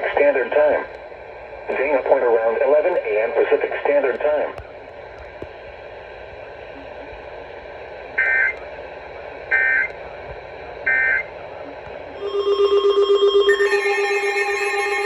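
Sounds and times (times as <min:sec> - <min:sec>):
radio hiss: 0:01.6 - 0:04.8
buzzing alert tone: 0:12.2 - 0:15.0
screeching data tones: 0:12.2 - 0:15.0.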